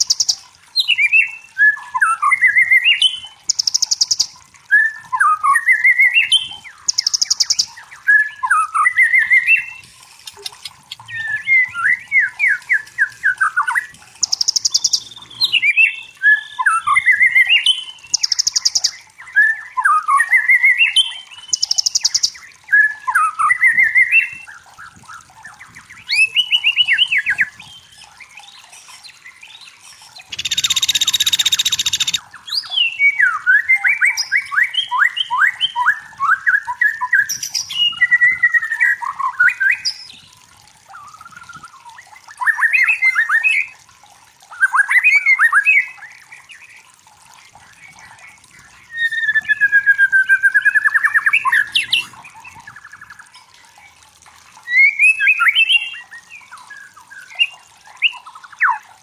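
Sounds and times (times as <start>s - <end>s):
bird whistled song phrases: 0.0s - 24.5s, 29.9s - 40.2s, 48.8s - 52.6s, 54.7s - 58.8s.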